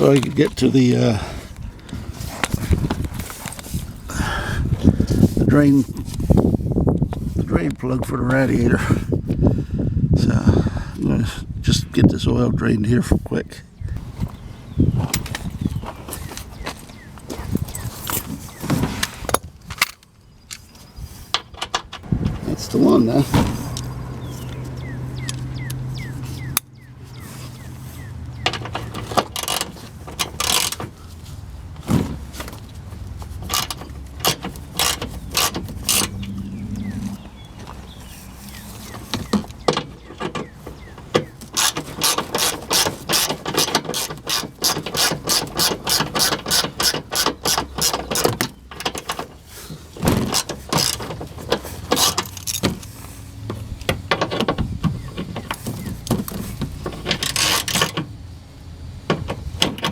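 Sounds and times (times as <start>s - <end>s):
ratchet wrench clicking: 41.6s - 48.3s.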